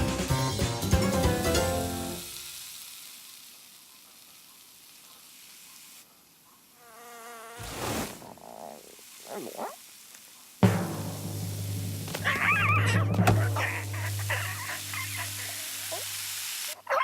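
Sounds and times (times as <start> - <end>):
cartoon music: 12.2 - 16.0
wavering insect-like buzz: 12.2 - 16.3.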